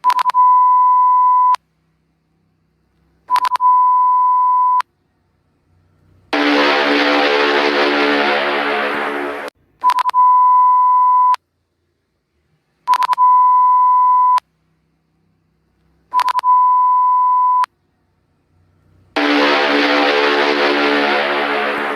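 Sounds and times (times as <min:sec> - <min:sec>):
steady high beep: 0:03.3 - 0:04.8, 0:06.4 - 0:11.4, 0:12.9 - 0:14.4, 0:16.2 - 0:17.7
harsh buzzing alarm tone: 0:06.3 - 0:09.5, 0:19.2 - 0:21.9
quick alarm bursts: 0:06.3 - 0:11.4, 0:19.2 - 0:21.9.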